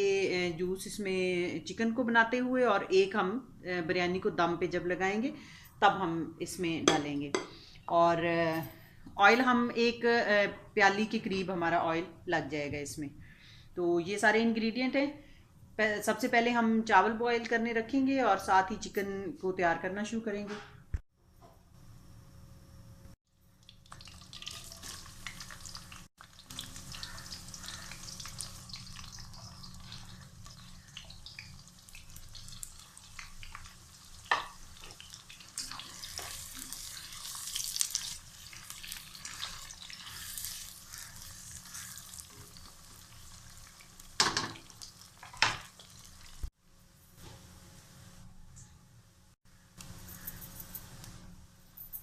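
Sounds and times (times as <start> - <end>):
food sizzling in hot oil: 23.6 - 46.6.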